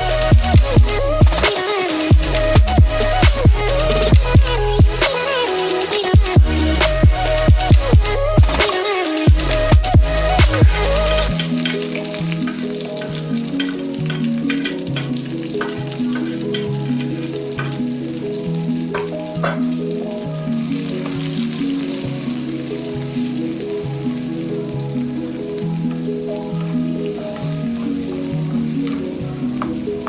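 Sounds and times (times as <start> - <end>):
background music: 0.0 - 30.0
food frying in oil: 0.0 - 30.0
stirring clicks: 8.4 - 19.8.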